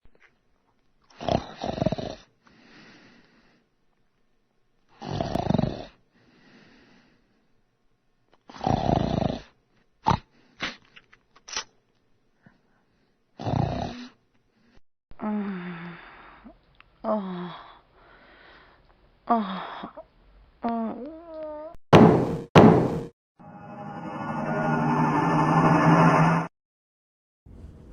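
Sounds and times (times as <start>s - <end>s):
person snoring: 5.0s - 6.0s.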